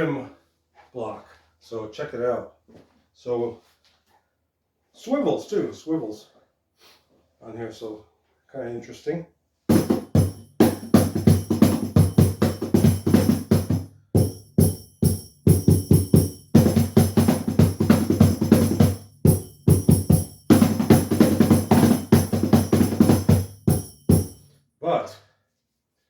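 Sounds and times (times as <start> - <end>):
cajon played by hand: 9.7 - 24.4
metallic jingle: 10.1 - 24.6.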